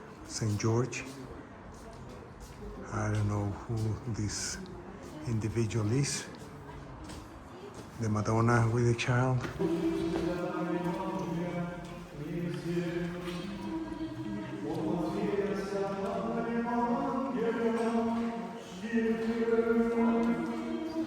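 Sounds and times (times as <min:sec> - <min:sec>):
choir chanting slowly: 0:09.4 - 0:21.0.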